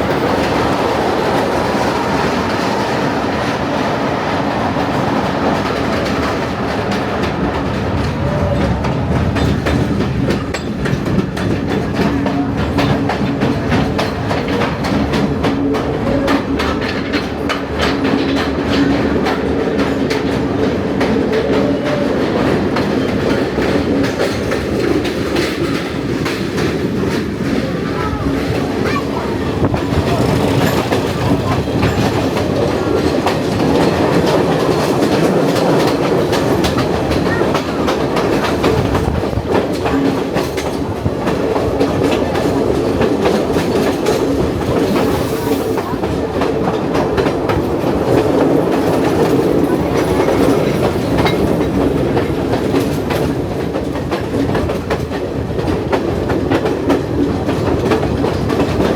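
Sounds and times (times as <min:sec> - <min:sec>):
train rumble: 0:00.0 - 0:58.9
train wheels clicking on rail joints: 0:00.0 - 0:58.9.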